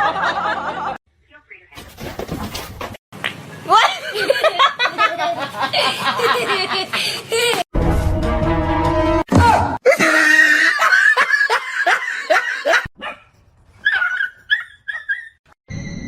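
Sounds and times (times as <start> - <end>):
dog yipping: 13.0 - 15.4.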